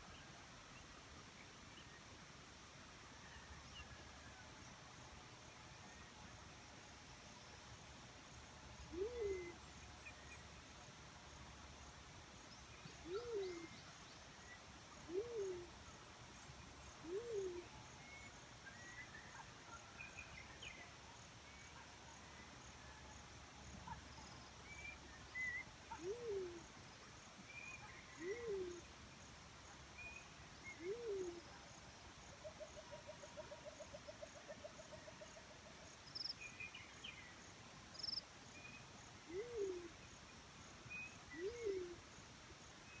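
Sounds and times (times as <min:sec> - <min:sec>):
dove hooting coos: 0:08.9 - 0:09.6, 0:13.1 - 0:13.8, 0:15.1 - 0:15.8, 0:17.0 - 0:17.7, 0:25.9 - 0:26.7, 0:28.1 - 0:28.8, 0:30.7 - 0:31.5, 0:39.3 - 0:40.0, 0:41.3 - 0:42.0
faint bird chirps: 0:12.9 - 0:15.7, 0:27.5 - 0:28.9, 0:40.9 - 0:42.1.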